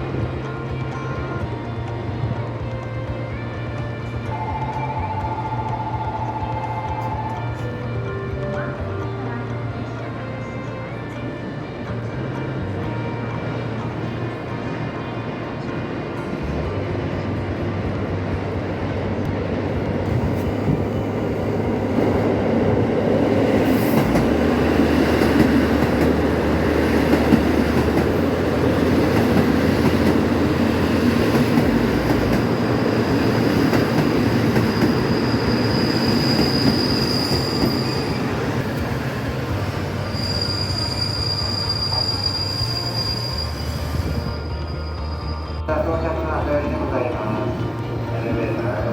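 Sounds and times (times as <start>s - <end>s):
train wheels rumbling on rails: 0.0s - 48.9s
wheel squeal: 30.8s - 45.7s.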